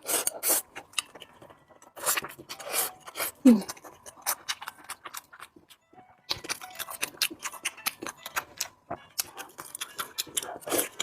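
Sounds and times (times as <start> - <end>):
wet chewing clicks and smacks: 3.8 - 11.0.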